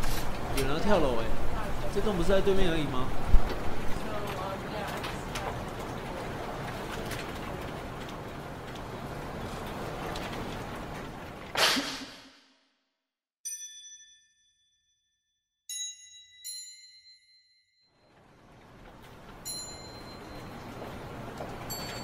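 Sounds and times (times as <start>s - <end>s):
sharp loud hit: 11.6s - 12.4s.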